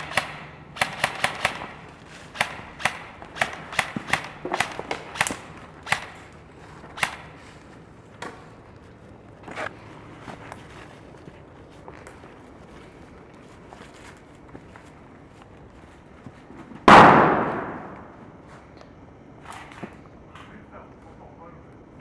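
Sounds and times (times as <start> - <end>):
airsoft guns firing: 0.0 - 8.5, 16.8 - 18.3.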